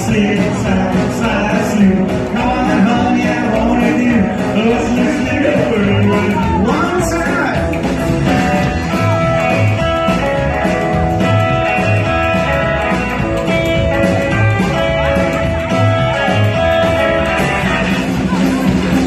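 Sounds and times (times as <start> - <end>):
person singing: 0.0 - 7.4
electric guitar: 0.0 - 19.0
rock and roll band playing: 0.0 - 19.0
steady bass notes: 0.0 - 19.0.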